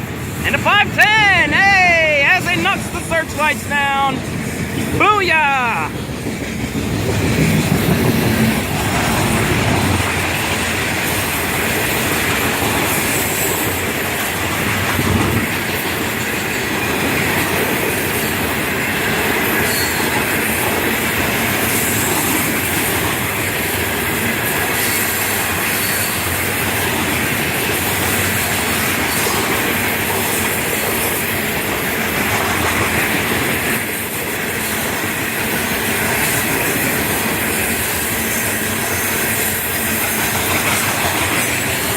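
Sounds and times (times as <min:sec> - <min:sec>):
train wheels rumbling on rails: 0:00.0 - 0:41.9
clickety-clack over rail joints: 0:03.6 - 0:05.0, 0:05.8 - 0:41.9
high wheel squeal: 0:19.6 - 0:20.2, 0:25.7 - 0:26.4.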